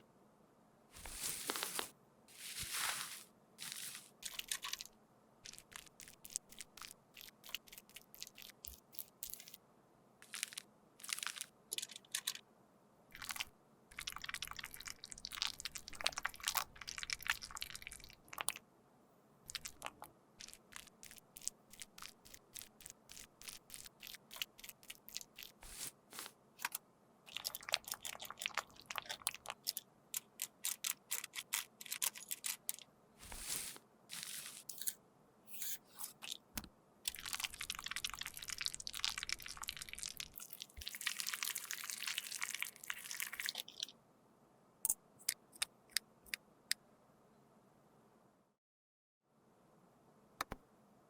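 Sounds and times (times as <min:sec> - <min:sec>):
crunching and scraping makeup powder: 0:01.0 - 0:09.6, 0:10.2 - 0:12.4, 0:19.5 - 0:36.4.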